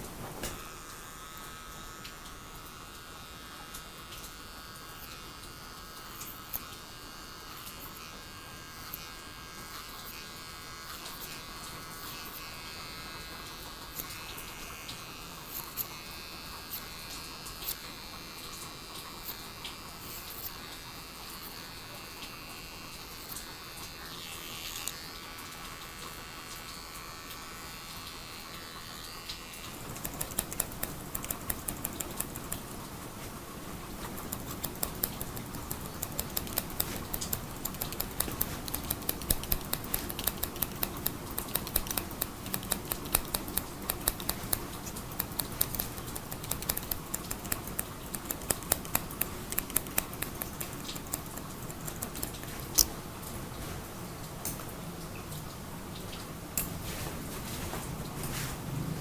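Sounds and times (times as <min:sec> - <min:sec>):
electric hair clipper buzzing: 0:00.0 - 0:53.8, 0:56.0 - 0:58.6
small clicks: 0:26.4 - 0:53.0.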